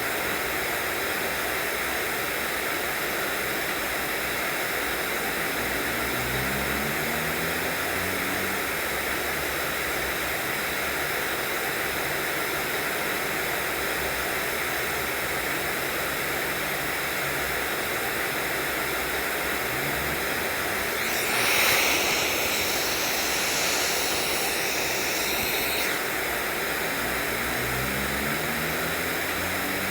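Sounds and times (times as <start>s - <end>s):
white noise hiss: 19.5s - 29.9s.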